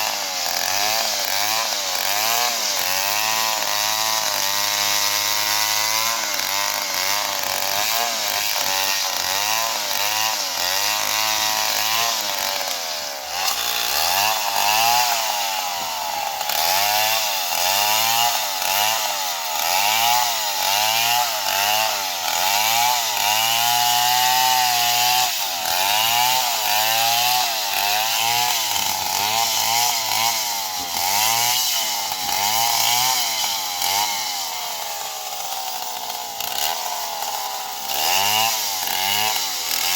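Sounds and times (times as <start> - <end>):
chainsaw revving while cutting: 0.0 - 39.9.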